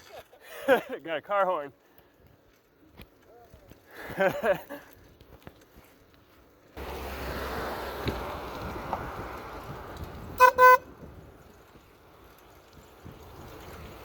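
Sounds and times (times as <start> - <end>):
electric horn short beeps: 10.4 - 10.8.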